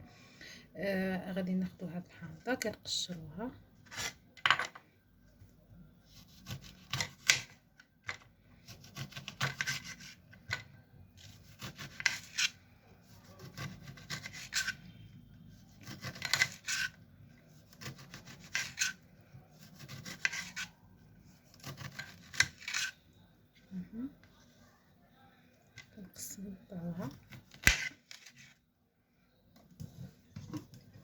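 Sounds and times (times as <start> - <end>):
knife scraping lemon rind: 8.8 - 10.2, 11.2 - 12.6, 13.2 - 14.9, 15.7 - 17.0, 17.6 - 19.0, 19.6 - 20.8, 21.4 - 23.0.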